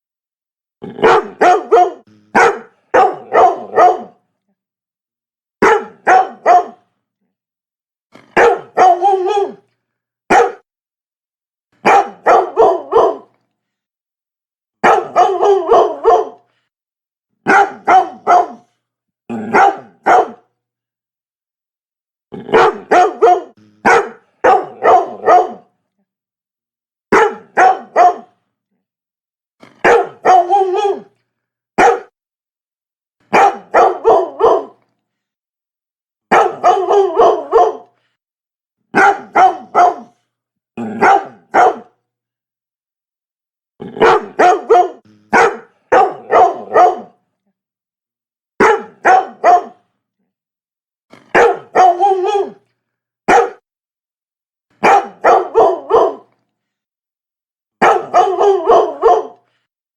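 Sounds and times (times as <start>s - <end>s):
dog barking: 1.0s - 4.2s, 5.6s - 6.9s, 8.2s - 9.6s, 10.3s - 10.7s, 11.8s - 13.4s, 14.8s - 16.5s, 17.4s - 18.8s, 19.4s - 20.5s, 22.5s - 25.7s, 27.1s - 28.4s, 29.7s - 31.1s, 31.8s - 32.2s, 33.3s - 34.8s, 36.3s - 37.9s, 38.9s - 40.2s, 40.8s - 42.0s, 43.9s - 47.2s, 48.6s - 49.8s, 51.2s - 52.6s, 53.3s - 53.6s, 54.8s - 56.3s, 57.8s - 59.5s.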